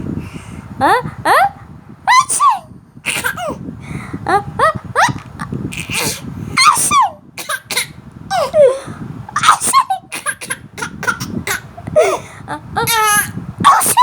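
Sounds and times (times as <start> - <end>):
baby laughing in high squeals: 2.1 - 3.6, 4.6 - 8.8, 9.4 - 12.2, 12.8 - 14.0.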